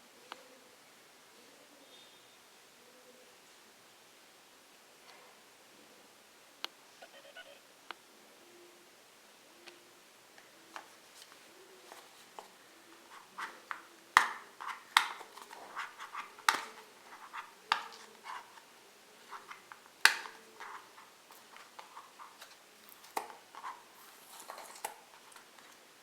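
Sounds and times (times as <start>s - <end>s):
packaging being handled: 11.2s - 25.8s.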